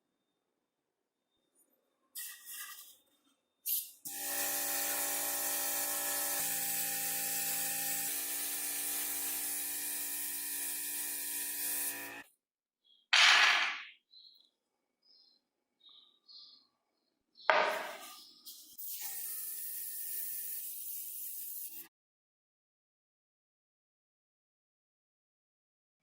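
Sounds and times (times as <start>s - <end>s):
paint spray hiss: 3.7s - 5.8s, 7.4s - 12.2s, 18.5s - 21.9s
motor hum: 4.1s - 12.2s.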